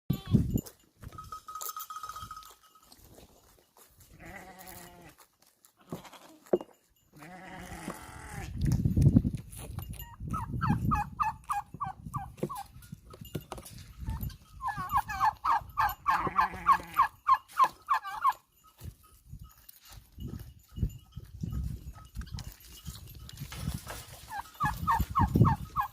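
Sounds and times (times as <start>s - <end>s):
bell clanking: 0.1s - 3.2s, 12.7s - 25.9s
goats bleating: 4.1s - 5.2s, 7.2s - 8.5s, 16.1s - 17.1s.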